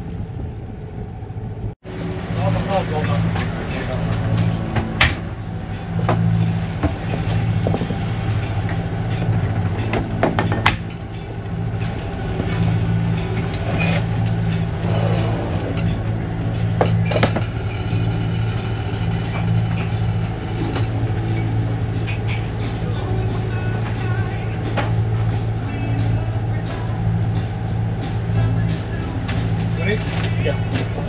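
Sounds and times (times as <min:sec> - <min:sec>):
boat engine drone: 0:00.0 - 0:31.0.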